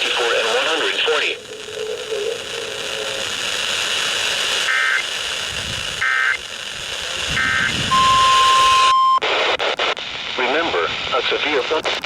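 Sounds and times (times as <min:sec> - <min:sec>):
radio hiss: 0:00.0 - 0:12.0
steady single-pitch tone: 0:07.9 - 0:09.2.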